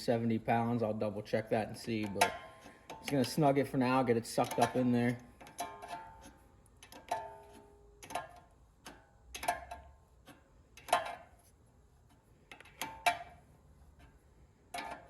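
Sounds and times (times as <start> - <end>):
wrench clinking on metal nut: 4.4 - 9.9.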